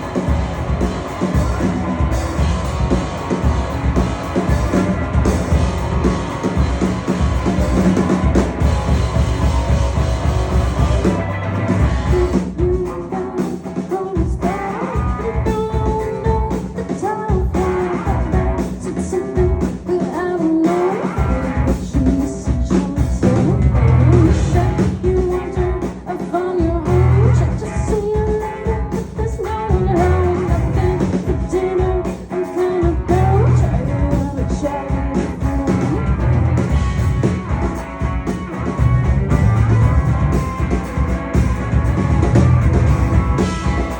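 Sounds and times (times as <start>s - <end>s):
bass guitar: 0.0s - 43.9s
drum kit: 0.0s - 43.9s
electric guitar: 0.0s - 43.9s
person singing: 10.8s - 36.3s.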